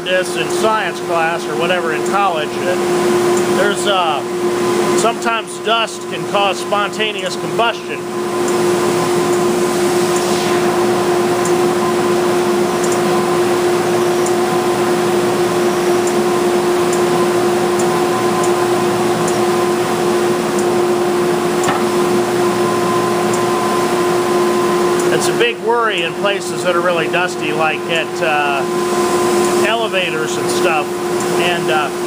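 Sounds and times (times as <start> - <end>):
belt sander humming: 6.0 - 25.3.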